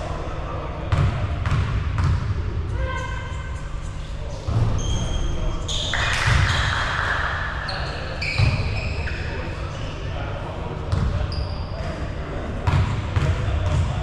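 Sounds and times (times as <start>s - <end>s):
voices in background: 0.0s - 14.0s
basketball bouncing on gym floor: 0.9s - 2.3s, 10.9s - 11.2s, 12.6s - 14.0s
high squeaks: 4.6s - 9.4s.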